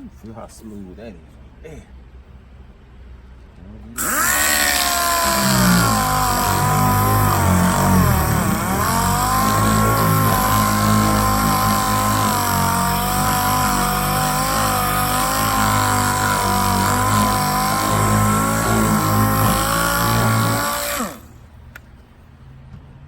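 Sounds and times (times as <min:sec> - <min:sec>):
power sander whining: 0:04.0 - 0:21.4.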